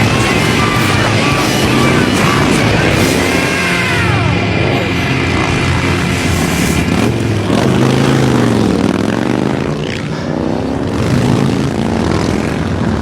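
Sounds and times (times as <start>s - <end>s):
vehicle engines passing: 0.0s - 13.0s.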